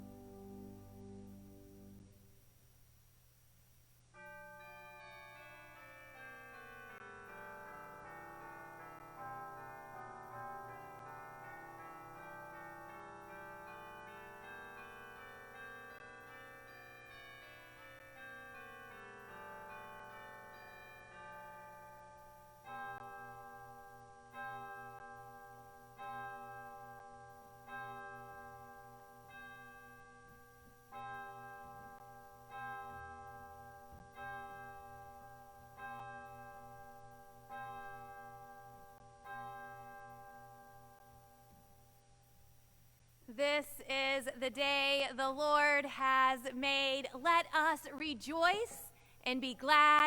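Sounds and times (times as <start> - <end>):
church bells pealing: 4.4 - 30.0, 30.9 - 41.0.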